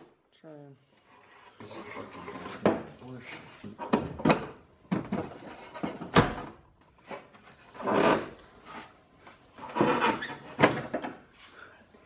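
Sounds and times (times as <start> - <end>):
metal knocks and clunks: 3.8 - 6.6.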